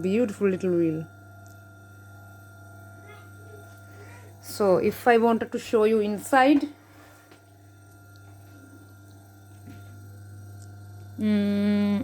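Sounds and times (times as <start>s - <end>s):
faint low electrical hum: 0.0s - 12.0s.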